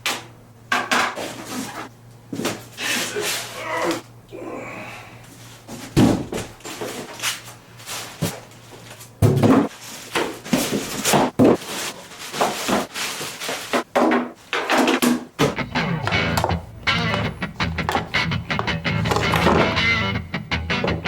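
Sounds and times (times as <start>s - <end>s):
knocks and clacks of handled parts: 13.6s - 19.8s.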